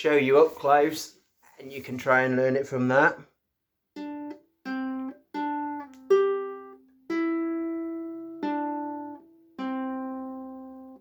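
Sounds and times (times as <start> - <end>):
ukulele notes plucked: 3.9 - 11.0.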